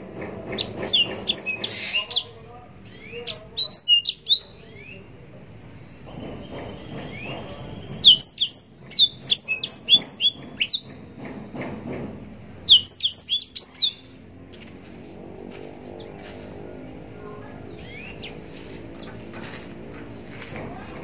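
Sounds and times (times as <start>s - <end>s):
low background noise: 0.0s - 21.0s
canary singing whistled notes: 0.6s - 5.1s, 6.0s - 10.9s, 12.7s - 14.1s, 17.7s - 18.3s.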